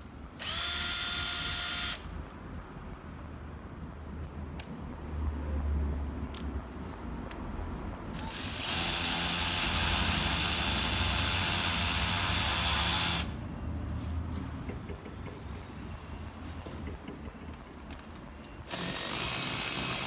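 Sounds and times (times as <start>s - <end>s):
drill motor whining: 0.4s - 2.1s, 8.2s - 13.4s, 18.6s - 20.0s.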